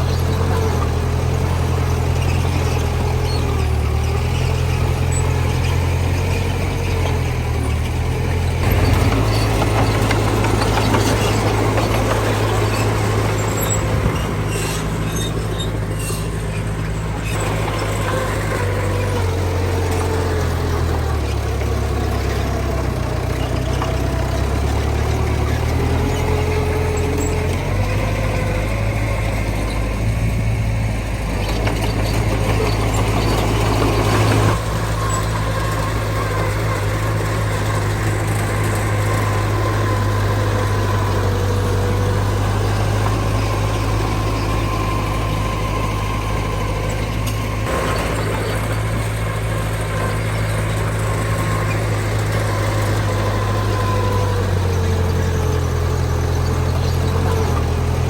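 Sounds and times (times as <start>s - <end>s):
diesel machinery engine: 0.0s - 58.0s.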